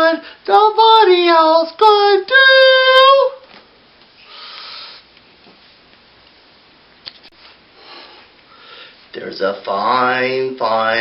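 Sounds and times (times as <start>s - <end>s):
high voice singing alone: 0.0s - 3.5s
faint breathy hiss: 0.1s - 0.5s, 3.4s - 6.0s, 7.1s - 9.8s.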